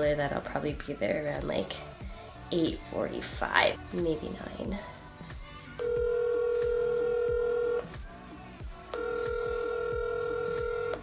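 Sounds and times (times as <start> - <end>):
phone ringback tone: 5.8 - 8.0, 8.9 - 11.0.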